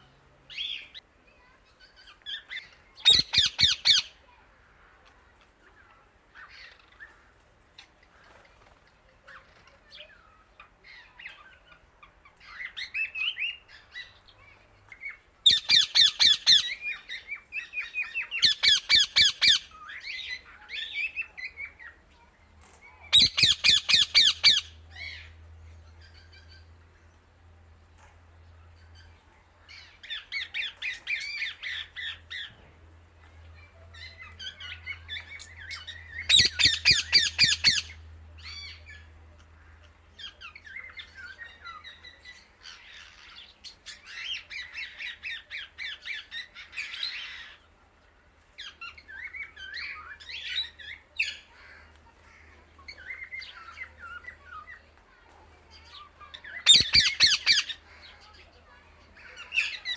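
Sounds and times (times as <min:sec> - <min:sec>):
parrot squawking: 0:03.0 - 0:04.1, 0:15.4 - 0:16.9, 0:18.3 - 0:19.8, 0:23.1 - 0:24.8, 0:36.2 - 0:38.0, 0:56.6 - 0:57.8.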